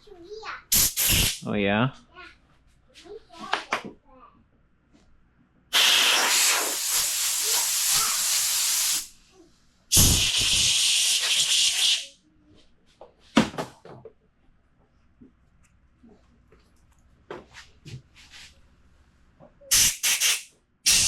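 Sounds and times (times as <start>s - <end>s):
gas hissing from a nozzle: 0.7s - 1.4s, 5.7s - 9.2s, 9.9s - 12.2s, 19.7s - 21.0s.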